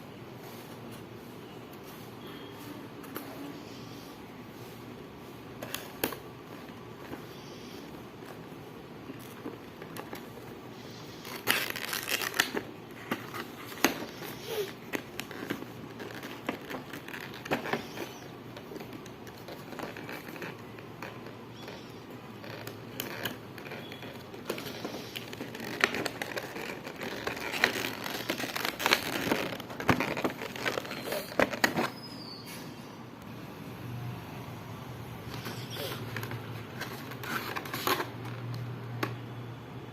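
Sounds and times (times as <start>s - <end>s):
plastic and cardboard crinkling: 4.7s - 32.3s, 35.2s - 39.2s.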